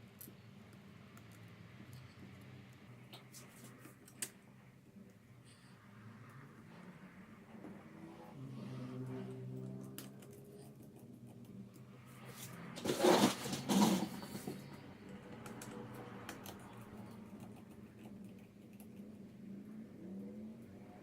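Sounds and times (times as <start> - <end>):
faint low hum: 0.0 - 21.0
scraping or rustling noises: 12.1 - 14.8.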